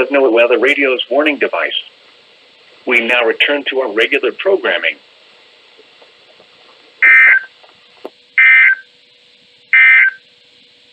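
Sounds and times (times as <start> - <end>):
two-tone warbling data bursts: 7.0 - 7.5, 8.4 - 8.9, 9.8 - 10.2.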